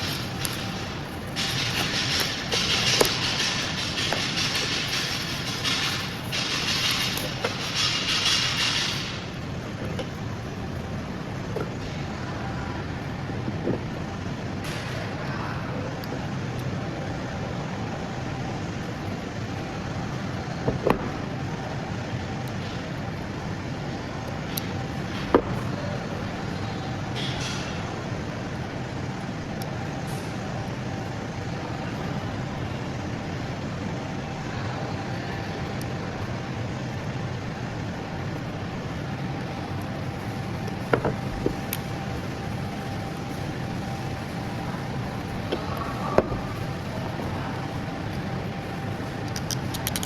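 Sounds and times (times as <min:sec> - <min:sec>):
car engine running: 0:00.0 - 0:11.9
faint constant whine: 0:00.0 - 0:50.0
low engine rumble: 0:00.0 - 0:50.0.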